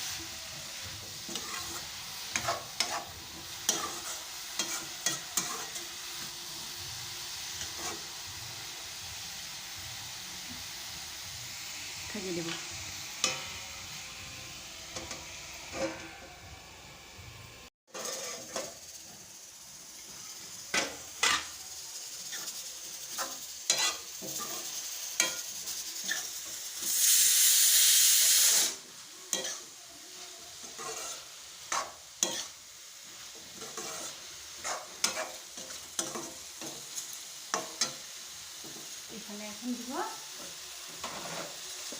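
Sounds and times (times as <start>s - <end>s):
spoon scraping a pan: 0.0s - 6.4s, 7.2s - 8.1s, 14.9s - 16.3s, 17.9s - 18.8s, 20.1s - 21.6s, 22.2s - 39.0s, 40.3s - 41.9s
food sizzling in a pan: 0.0s - 41.9s.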